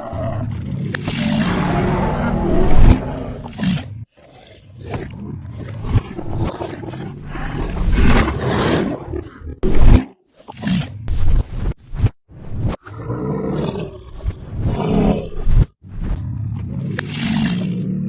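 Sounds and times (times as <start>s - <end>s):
large animal roaring: 0.0s - 3.8s.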